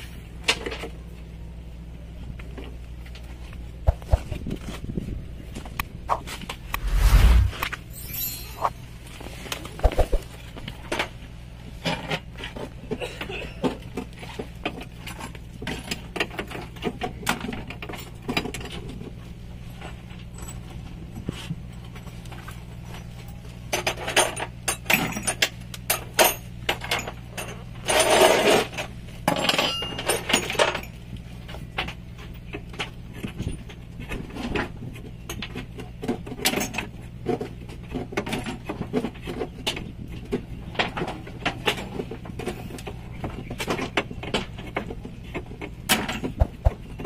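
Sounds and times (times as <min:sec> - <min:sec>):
metallic clinks of tools: 0:07.9 - 0:08.9.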